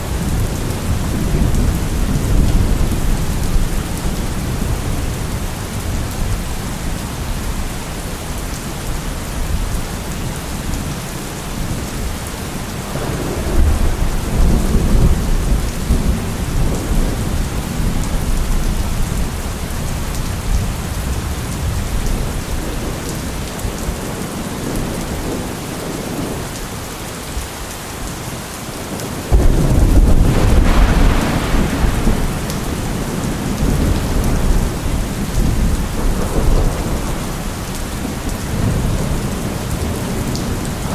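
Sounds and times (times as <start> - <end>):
thunder rumbling: 0.0 - 7.3, 12.8 - 24.0, 29.3 - 40.9
heavy rain hissing: 0.0 - 40.9.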